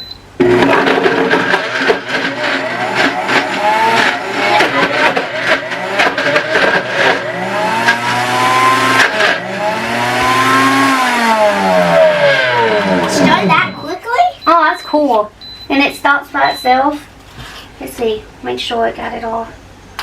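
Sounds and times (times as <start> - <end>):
blender motor running: 0.4 - 13.4.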